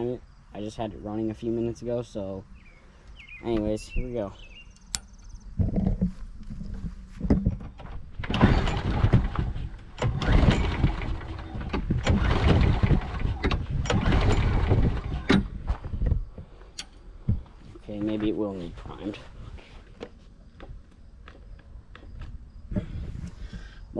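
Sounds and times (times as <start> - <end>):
mower engine turning over: 5.6 - 16.0.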